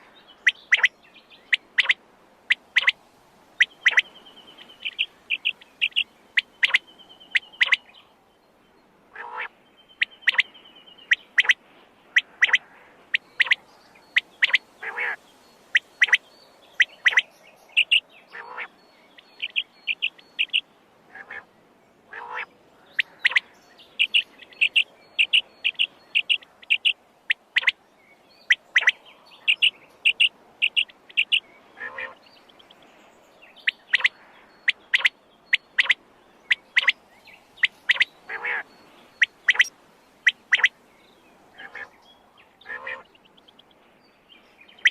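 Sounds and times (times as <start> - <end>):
quail calling: 0.0 - 0.9, 1.5 - 3.0, 3.6 - 7.9, 9.2 - 10.5, 11.1 - 11.6, 12.2 - 16.2, 16.8 - 18.7, 19.4 - 21.5, 22.1 - 27.8, 28.5 - 32.2, 33.6 - 37.0, 37.6 - 40.7, 41.6 - 41.9, 42.6 - 43.1.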